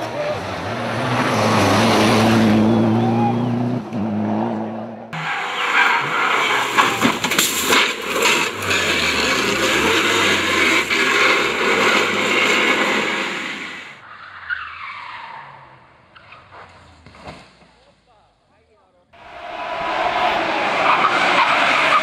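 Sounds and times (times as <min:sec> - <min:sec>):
race car tyres skidding: 0:04.6 - 0:17.0, 0:19.2 - 0:22.0.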